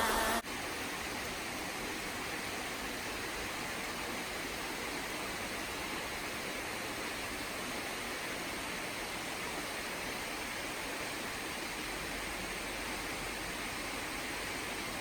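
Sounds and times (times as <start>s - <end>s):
waterfall rushing: 0.0s - 0.7s.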